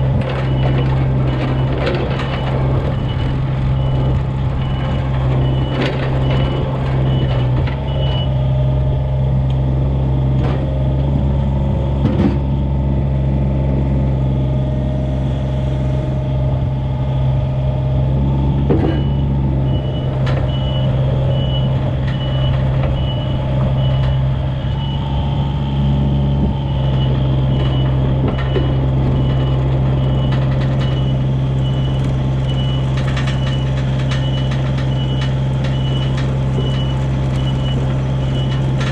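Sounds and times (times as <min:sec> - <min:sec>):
diesel engine running: 0:00.0 - 0:38.9
travel alarm beeping: 0:18.8 - 0:25.4.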